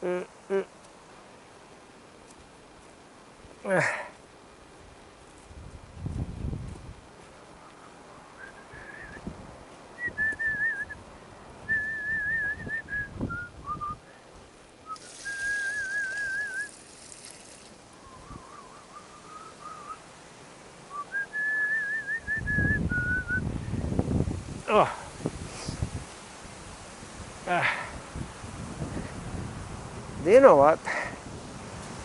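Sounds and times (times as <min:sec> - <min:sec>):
person whistling a slow tune: 0:08.4 - 0:09.2, 0:10.0 - 0:11.0, 0:11.7 - 0:14.0, 0:14.9 - 0:16.7, 0:18.0 - 0:20.0, 0:20.9 - 0:23.4.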